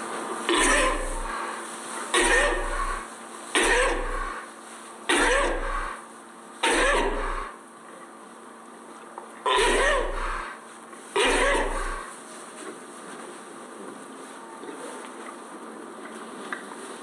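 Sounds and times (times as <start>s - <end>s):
sheep sneezing: 0.5s - 4.5s, 5.1s - 6.0s, 6.6s - 7.6s, 9.5s - 12.1s.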